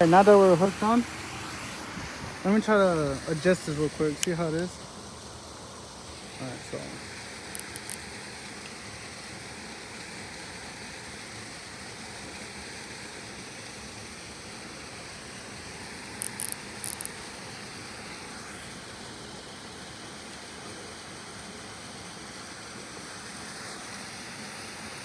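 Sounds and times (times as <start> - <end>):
outdoor background hiss: 0.0 - 25.0
faint high clicks: 7.5 - 8.8, 16.2 - 17.3.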